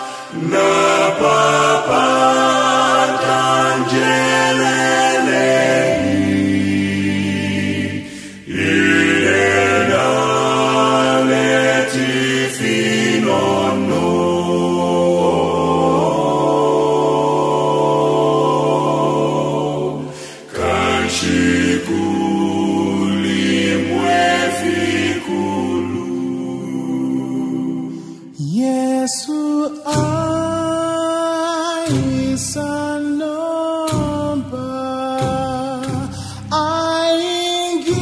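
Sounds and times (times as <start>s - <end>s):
choir singing in harmony: 0.0s - 29.0s.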